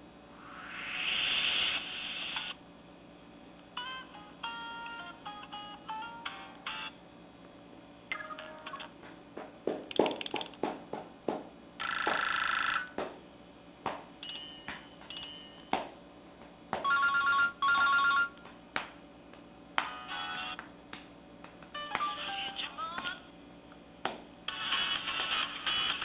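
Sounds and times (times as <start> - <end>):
phone ringtone: 3.8 - 7.0, 8.1 - 8.9, 11.8 - 12.9, 14.2 - 15.7, 16.8 - 18.4, 19.9 - 20.6, 21.8 - 22.6.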